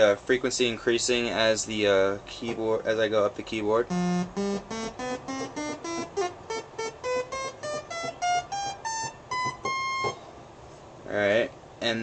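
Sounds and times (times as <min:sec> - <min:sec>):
synthesizer notes climbing: 0:03.9 - 0:10.2.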